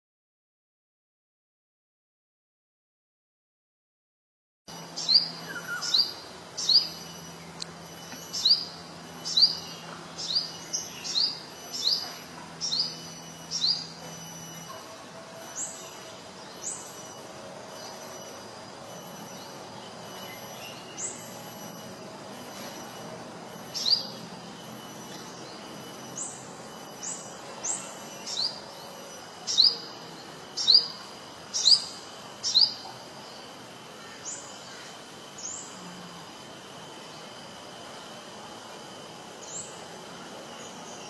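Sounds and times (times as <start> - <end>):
faint high hum and hiss: 4.7 - 41.0
bird whistled chirps: 5.0 - 7.0.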